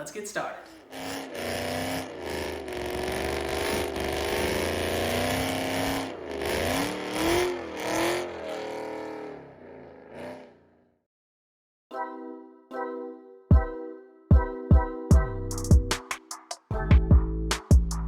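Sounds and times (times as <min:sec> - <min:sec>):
car engine revving: 0:00.6 - 0:10.9.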